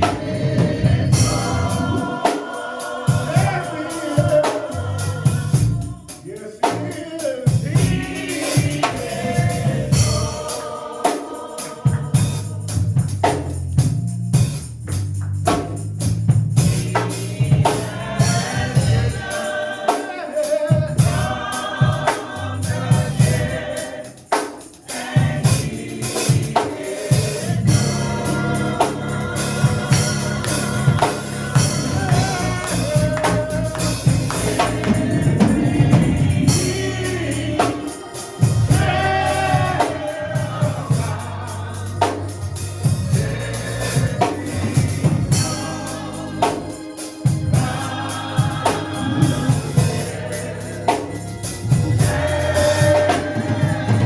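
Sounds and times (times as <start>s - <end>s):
bass line: 0.0s - 2.2s, 4.8s - 6.1s, 7.6s - 10.5s, 11.9s - 19.3s, 20.8s - 23.8s, 27.3s - 54.0s
choir and congregation singing: 0.0s - 13.9s, 15.5s - 54.0s
organ: 0.0s - 54.0s
tambourine or drums beat: 0.0s - 54.0s.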